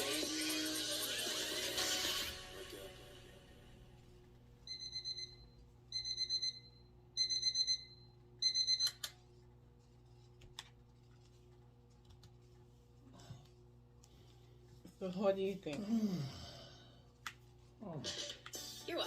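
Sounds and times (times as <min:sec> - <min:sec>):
rapid high alarm beeps: 0:04.7 - 0:08.9.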